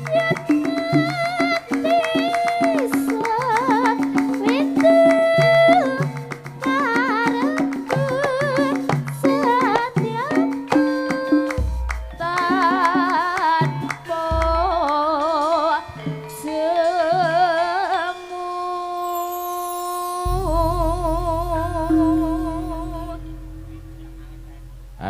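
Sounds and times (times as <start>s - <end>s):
ringing metallophone notes: 8.8s - 25.0s
person singing with vibrato: 12.2s - 25.0s
deep low strokes: 20.3s - 25.0s.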